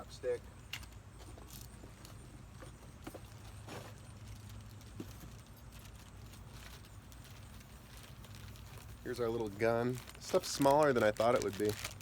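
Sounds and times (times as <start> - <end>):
packaging clicks and rattles: 4.2 - 12.0.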